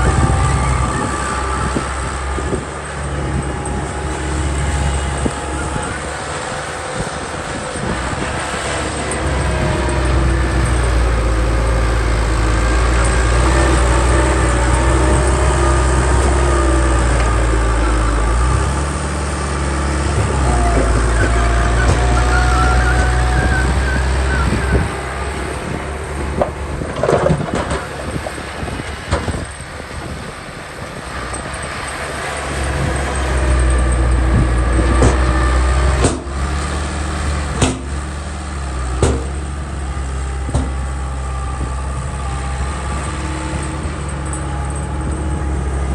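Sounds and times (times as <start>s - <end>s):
wavering squeals: 0.0s - 26.8s
diesel machinery engine hum: 0.0s - 45.9s.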